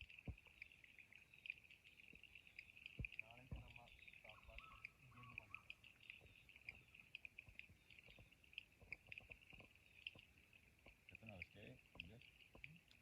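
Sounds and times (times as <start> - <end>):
small clicks and ticks: 0.0 - 13.0.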